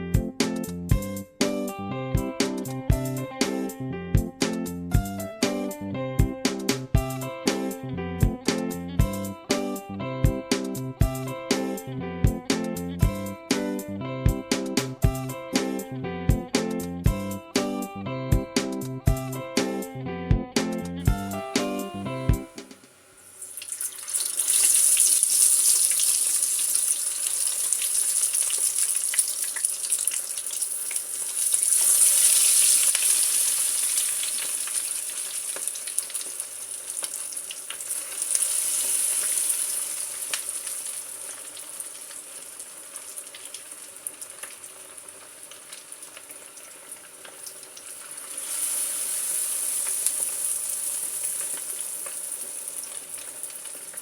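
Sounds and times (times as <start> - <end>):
chicken sizzling in hot oil: 22.6 - 54.0.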